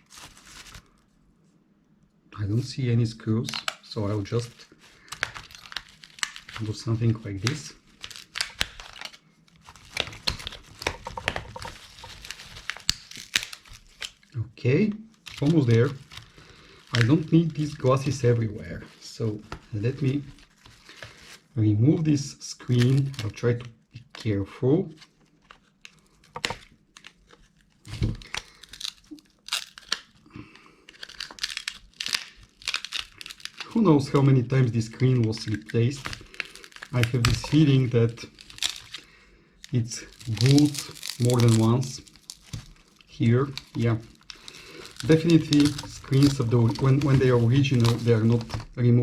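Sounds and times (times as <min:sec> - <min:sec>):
plastic phone case cracking: 0:05.1 - 0:06.6, 0:07.5 - 0:14.2, 0:25.4 - 0:27.4, 0:38.4 - 0:39.0, 0:40.2 - 0:48.8.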